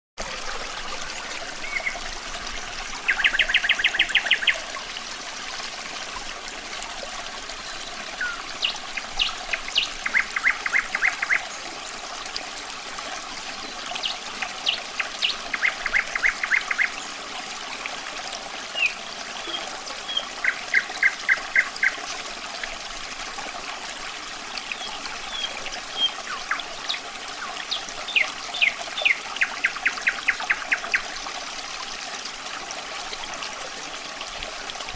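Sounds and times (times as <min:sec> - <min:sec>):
water trickling: 0:00.2 - 0:34.9
nightingale singing: 0:08.2 - 0:11.4.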